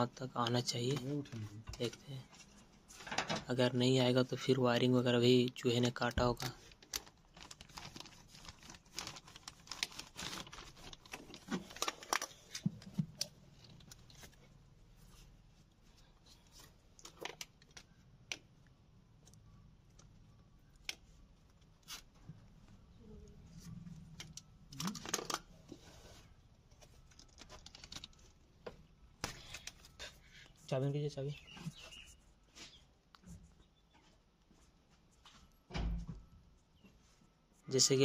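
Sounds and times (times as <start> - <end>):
rustling and scraping: 0.8 - 3.5, 21.2 - 37.7.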